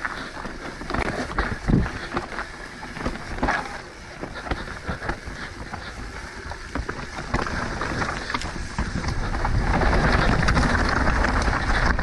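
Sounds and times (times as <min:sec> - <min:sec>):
bike rattling clicks: 0:00.0 - 0:12.0
bike tyre noise: 0:00.0 - 0:12.0
wind rushing over microphone: 0:00.6 - 0:12.0.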